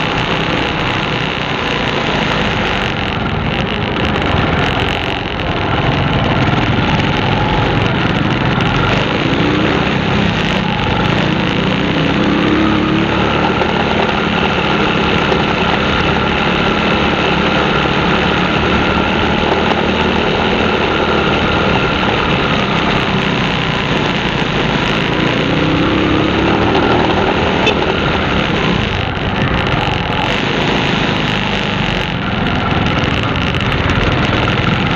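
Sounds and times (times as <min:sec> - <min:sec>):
vehicle engine revving: 0:00.0 - 0:34.9.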